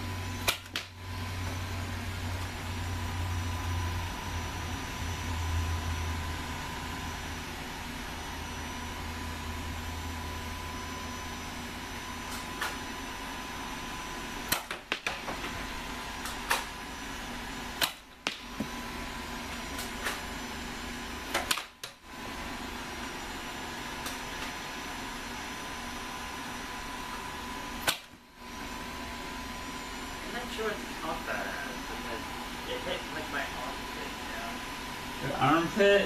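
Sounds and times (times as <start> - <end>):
low hum: 0.0 - 14.6
foam dart blasters firing: 0.4 - 0.9, 14.5 - 15.3, 17.8 - 18.6.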